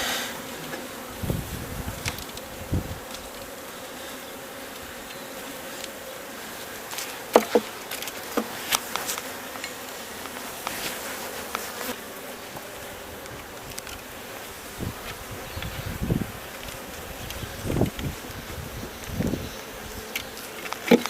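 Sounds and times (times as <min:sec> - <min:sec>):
bees humming: 0:00.0 - 0:21.0
knocks and clicks of hive frames: 0:01.9 - 0:03.5, 0:06.8 - 0:12.0, 0:16.5 - 0:21.0.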